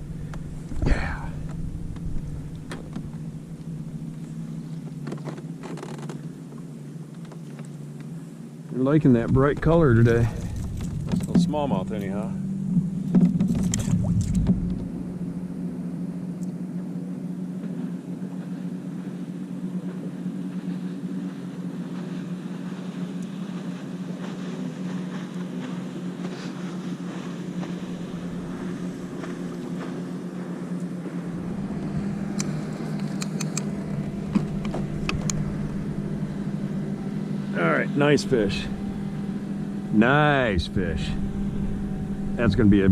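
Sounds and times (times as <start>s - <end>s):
low motor hum: 0.0s - 42.9s
light clicks: 32.3s - 35.4s.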